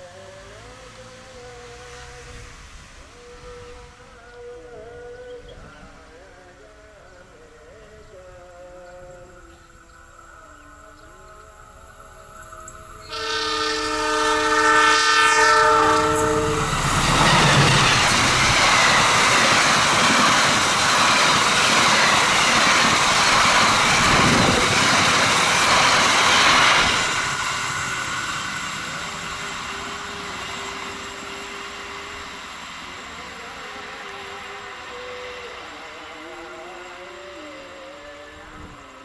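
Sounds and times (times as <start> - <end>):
train horn chord: 10.0 - 19.1
train wheels rolling on rails: 11.4 - 39.0.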